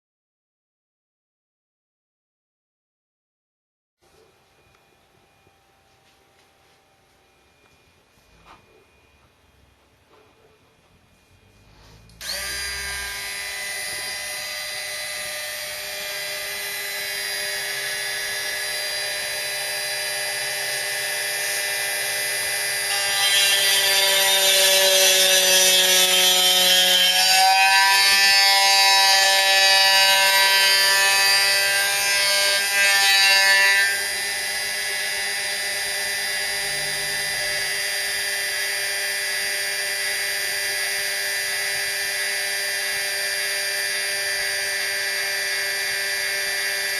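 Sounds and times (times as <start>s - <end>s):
mini mill spindle whine: 4.1s - 46.9s
hissing cutting noise: 11.3s - 24.9s.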